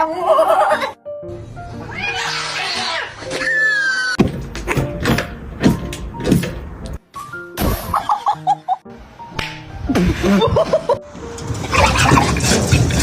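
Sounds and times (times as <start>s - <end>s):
music with knocks and blips: 4.2s - 8.2s.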